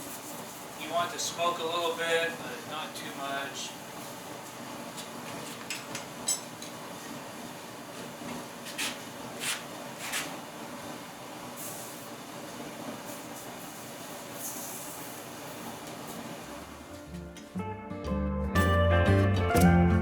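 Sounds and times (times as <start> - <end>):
gas forge burner roaring: 0.0 - 17.6.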